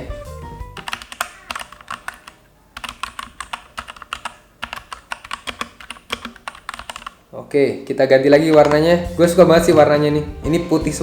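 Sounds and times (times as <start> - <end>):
mechanical keyboard typing: 0.8 - 7.2, 8.5 - 9.0.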